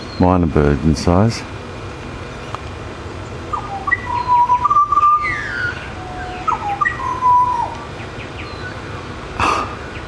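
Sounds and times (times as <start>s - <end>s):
bird whistled song: 3.5s - 9.1s.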